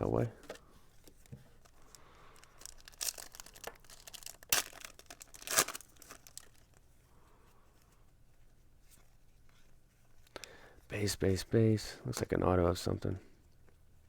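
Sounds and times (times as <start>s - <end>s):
wrapper crinkling: 1.1s - 6.8s
loud sharp tearing: 2.8s - 6.4s.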